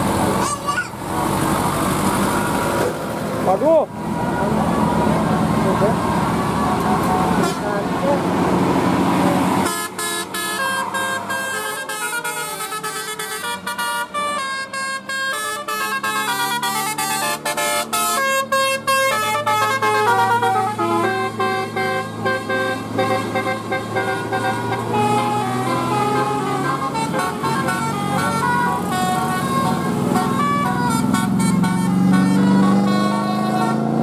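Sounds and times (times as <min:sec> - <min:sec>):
bus air horns playing melody: 0:06.3 - 0:07.8, 0:09.5 - 0:34.0.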